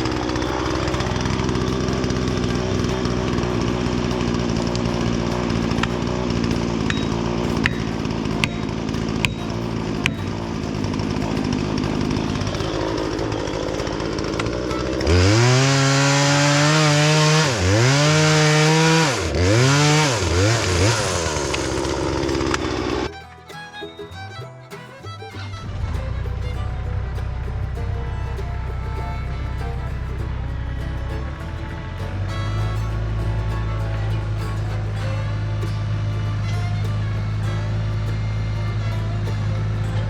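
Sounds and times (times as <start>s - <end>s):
chainsaw revving hard: 0.0s - 23.1s
steady engine hum: 0.0s - 40.0s.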